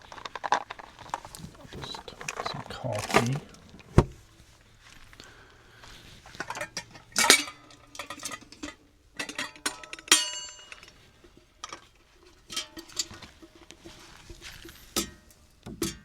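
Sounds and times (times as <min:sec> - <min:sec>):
metal and ceramic clinks: 0:06.4 - 0:11.0.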